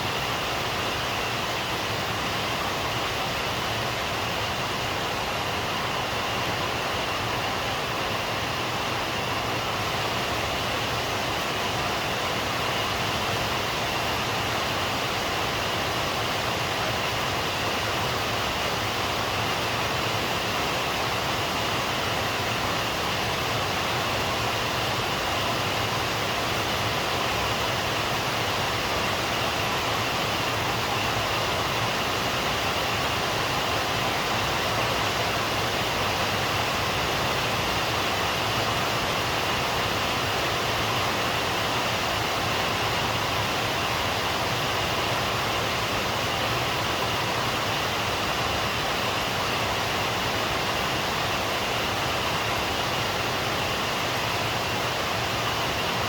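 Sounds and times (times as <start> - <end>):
rain falling steadily: 0.0 - 56.0.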